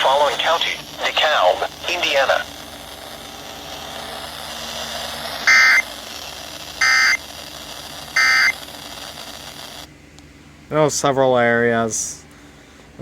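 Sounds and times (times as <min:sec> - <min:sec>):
radio hiss: 0:00.0 - 0:09.9
digital data tone bursts: 0:04.5 - 0:08.7.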